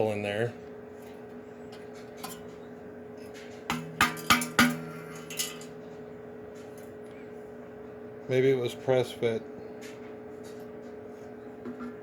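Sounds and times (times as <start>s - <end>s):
metal clanking on steel: 3.7s - 5.8s.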